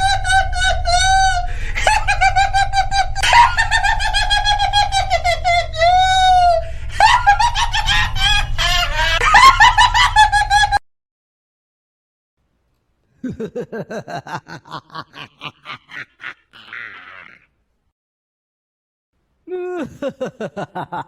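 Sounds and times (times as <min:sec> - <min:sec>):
high-pitched cackling clown laugh: 0:00.0 - 0:10.8, 0:13.2 - 0:17.6, 0:19.5 - 0:21.0
low hum: 0:00.0 - 0:10.8.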